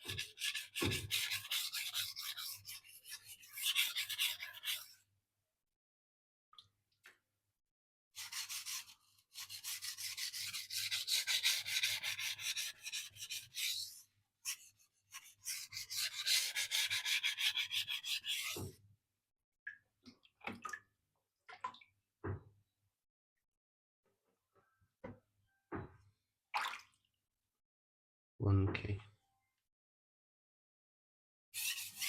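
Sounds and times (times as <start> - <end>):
knife stroked on whetstone: 0.0 - 5.0, 8.2 - 18.8, 31.6 - 32.0.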